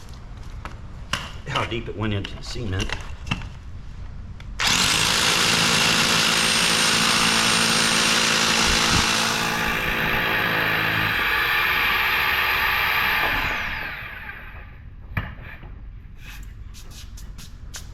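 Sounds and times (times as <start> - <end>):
hammer drill drilling into concrete: 4.6 - 14.6.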